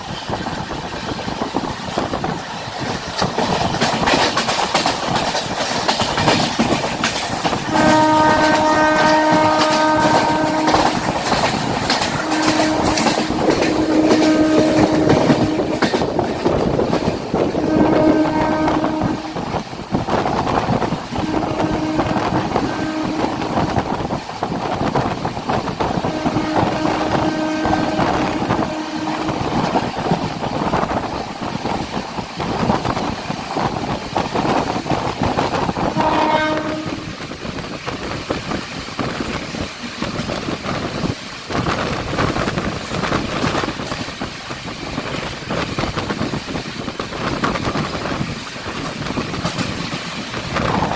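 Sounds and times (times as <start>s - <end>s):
train wheels rumbling on rails: 0.0s - 50.9s
train horn blasts: 7.7s - 16.1s, 17.5s - 19.6s, 21.2s - 24.0s, 25.9s - 29.8s, 35.9s - 37.2s.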